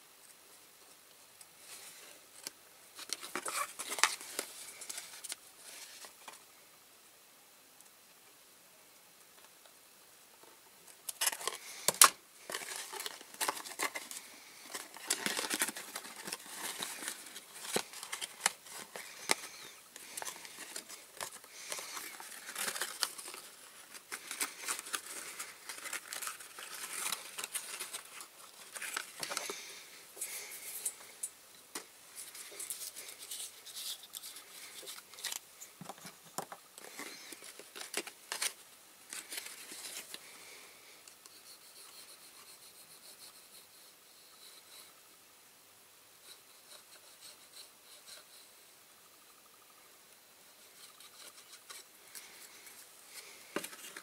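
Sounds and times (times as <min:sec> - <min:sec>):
rustling and crinkling: 0:00.2 - 0:06.4, 0:10.4 - 0:40.7, 0:50.4 - 0:54.0
small sharp clicks and scrapes: 0:50.6 - 0:54.0.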